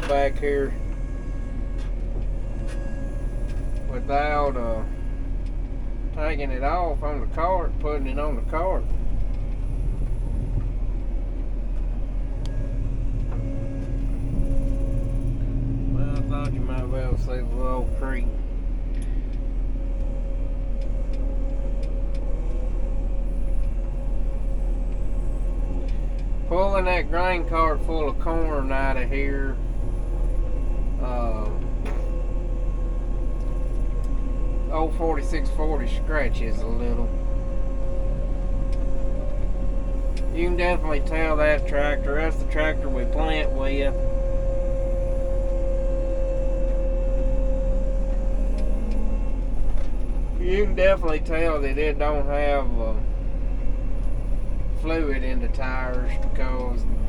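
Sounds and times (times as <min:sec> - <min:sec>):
diesel engine rumbling: 0:00.0 - 0:57.0
steady engine whine: 0:00.0 - 0:57.0.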